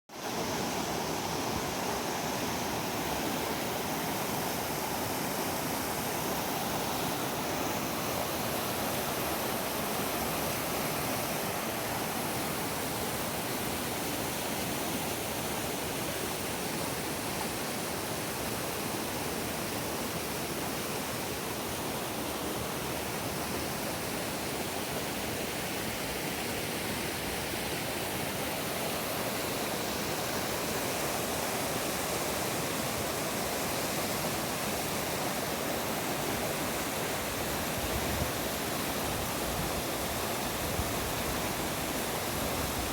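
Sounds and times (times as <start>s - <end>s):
running water rushing: 0.1s - 42.9s.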